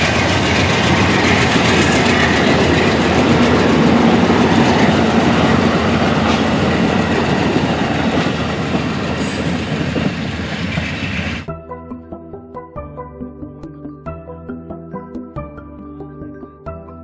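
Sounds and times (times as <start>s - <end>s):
train wheels clattering on rails: 0.0s - 11.5s.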